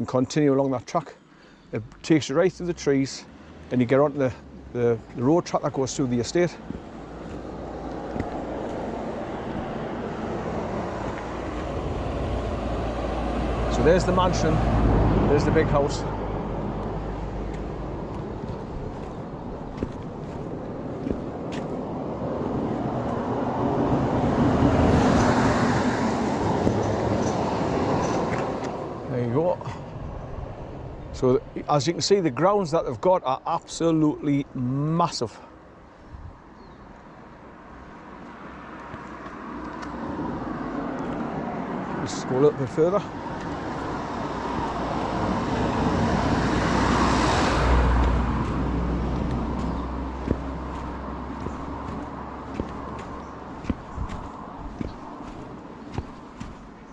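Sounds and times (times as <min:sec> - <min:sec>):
motor vehicle passing by: 0:06.0 - 0:29.0, 0:43.0 - 0:56.9.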